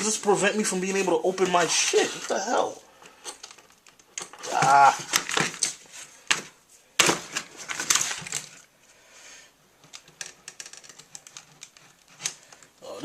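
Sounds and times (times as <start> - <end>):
plastic packaging crackling: 3.4 - 8.7.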